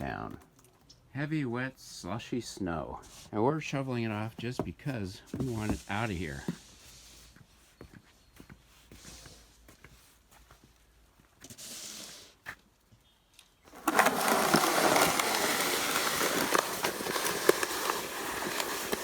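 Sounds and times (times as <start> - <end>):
snow shovel scraping slush: 13.7 - 19.0.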